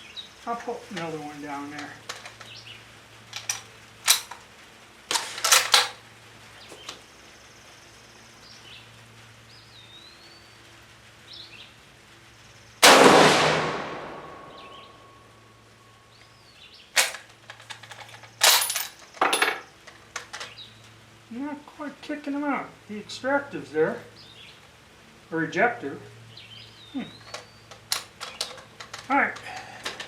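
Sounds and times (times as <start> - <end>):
rifle shot echoing: 12.8 - 14.9.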